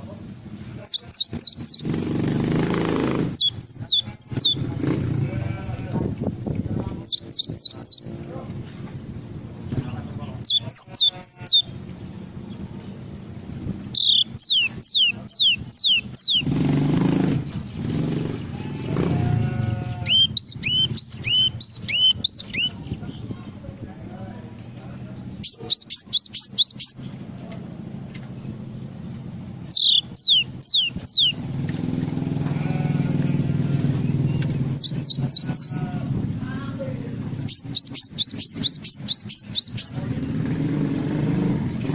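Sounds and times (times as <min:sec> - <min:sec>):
low engine-like hum: 0:00.0 - 0:41.9
songbird whistled notes: 0:00.9 - 0:01.9, 0:03.4 - 0:04.6, 0:07.1 - 0:08.1, 0:10.4 - 0:11.7, 0:13.9 - 0:16.5, 0:20.1 - 0:22.8, 0:25.4 - 0:27.0, 0:29.7 - 0:31.4, 0:34.3 - 0:35.7, 0:37.5 - 0:40.0.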